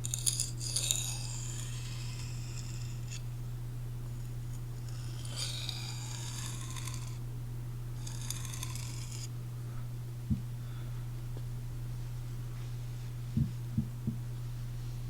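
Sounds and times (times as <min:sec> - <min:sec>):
knife scraping on sharpening stone: 0:00.0 - 0:03.2, 0:04.2 - 0:07.2, 0:08.0 - 0:09.3
steady low hum: 0:00.0 - 0:15.0.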